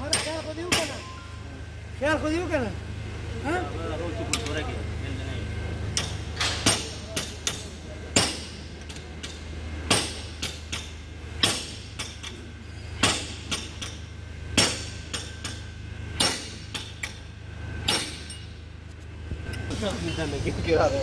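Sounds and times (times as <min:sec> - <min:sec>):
hammer striking metal: 0:00.0 - 0:01.2, 0:06.0 - 0:12.4, 0:13.0 - 0:18.6.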